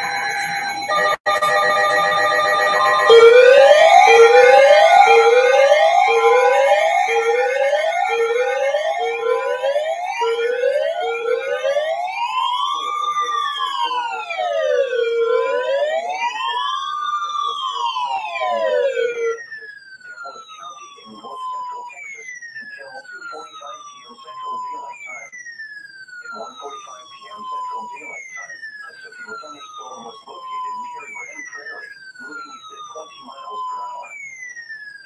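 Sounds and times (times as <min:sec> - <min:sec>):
electronic siren whooping and wailing: 0:00.0 - 0:35.0
steady tone: 0:02.2 - 0:16.7.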